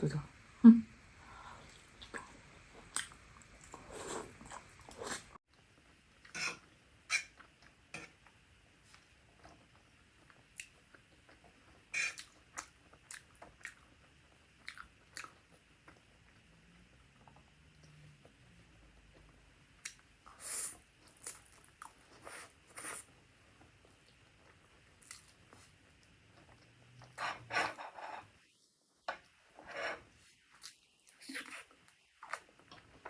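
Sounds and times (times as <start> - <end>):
person chewing food: 1.5 - 5.4, 9.3 - 16.4.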